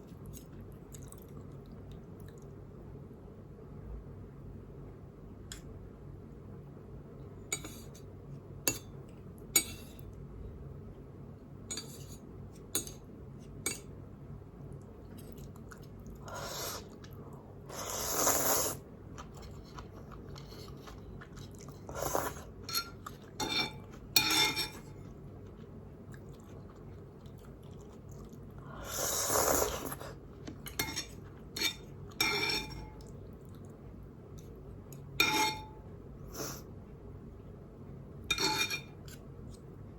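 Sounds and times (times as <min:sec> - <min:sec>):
chewing and wet mouth sounds: 0:00.0 - 0:02.8, 0:14.6 - 0:17.6, 0:18.6 - 0:32.2, 0:32.9 - 0:35.0.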